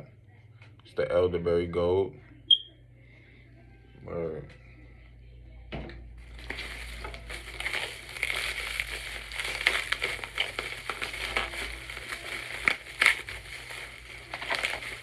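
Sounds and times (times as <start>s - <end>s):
bubble wrap snaps: 6.2s - 15.0s
plastic packaging crinkling: 6.2s - 15.0s.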